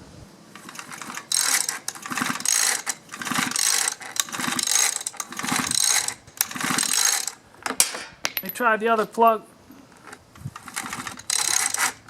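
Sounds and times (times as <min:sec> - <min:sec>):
rope whirring: 0:00.0 - 0:07.4, 0:10.4 - 0:12.0
recoil starter cord pulls: 0:00.5 - 0:07.9, 0:09.9 - 0:12.0
starter ratcheting: 0:00.6 - 0:08.0, 0:09.9 - 0:12.0.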